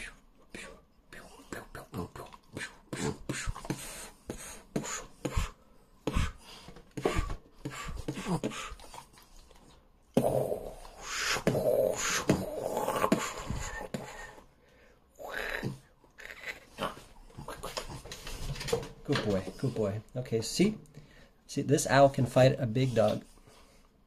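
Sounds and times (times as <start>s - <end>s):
man making monster noises: 1.5s - 3.5s, 8.0s - 8.7s, 10.2s - 14.1s, 15.2s - 18.0s.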